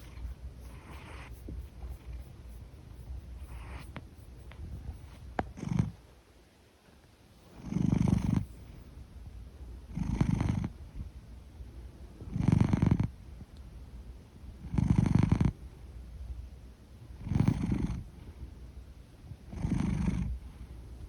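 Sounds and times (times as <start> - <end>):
cat rumbling snore-like breaths: 0.0 - 2.2, 5.6 - 6.0, 7.5 - 8.5, 9.9 - 10.8, 12.2 - 13.1, 14.6 - 15.6, 17.2 - 18.1, 19.4 - 20.4.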